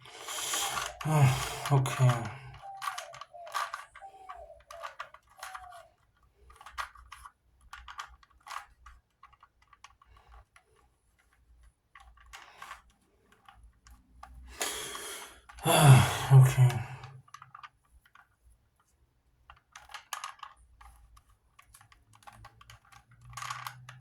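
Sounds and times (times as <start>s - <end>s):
plastic puzzle cube clicking: 0.1s - 14.0s, 19.5s - 24.0s.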